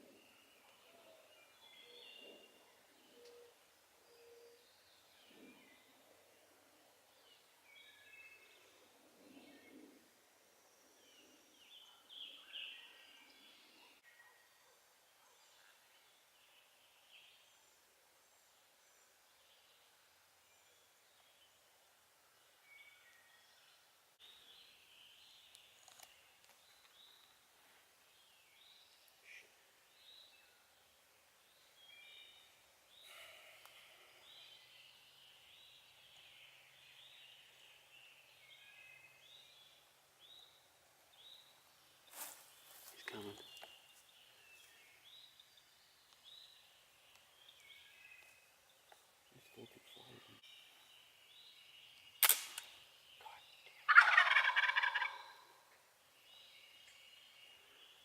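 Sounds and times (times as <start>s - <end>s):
songbirds singing: 0.0s - 58.0s
sharp click: 52.2s - 52.8s
turkey gobbling: 53.9s - 55.4s.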